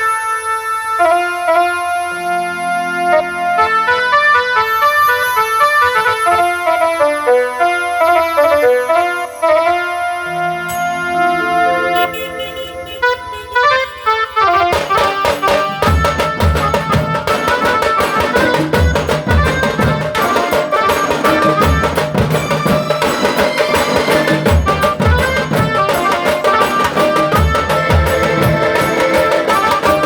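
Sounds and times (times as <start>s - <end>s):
melody line: 8.1s - 14.2s
rapid drum strokes: 14.6s - 30.0s.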